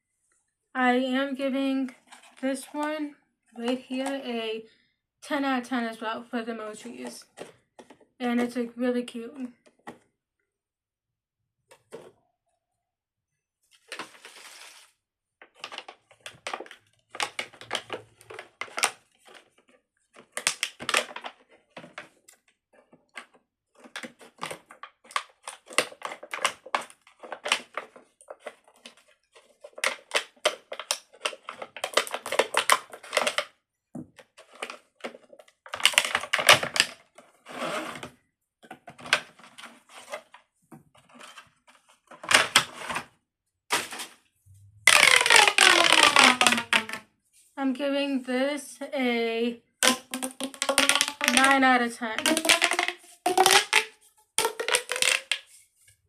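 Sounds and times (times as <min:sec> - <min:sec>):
fidget toys clicking: 0:44.9 - 0:46.9.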